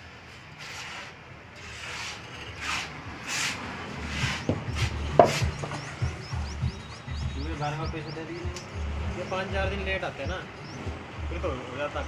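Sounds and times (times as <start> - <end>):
rough scraping strokes: 0.6 - 5.6
sharp knock: 4.3 - 5.9.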